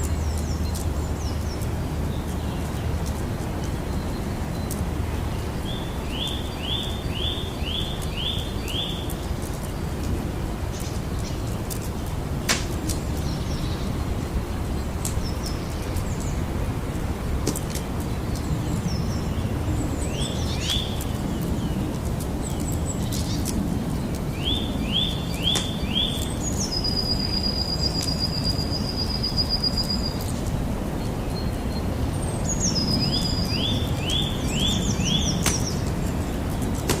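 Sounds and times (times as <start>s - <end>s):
bird chirping: 0.0s - 10.0s, 18.0s - 37.0s
campfire crackling and popping: 0.0s - 13.8s, 14.4s - 28.2s, 33.7s - 37.0s.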